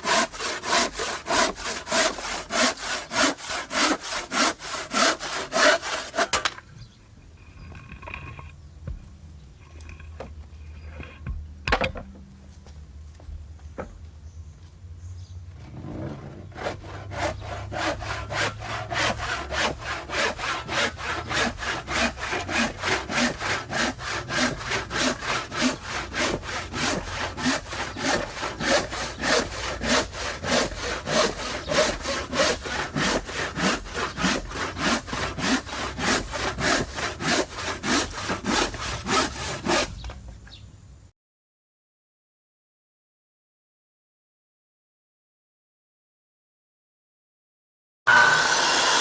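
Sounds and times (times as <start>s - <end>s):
hand saw cutting wood: 0.0s - 6.6s, 15.8s - 40.2s, 48.1s - 49.0s.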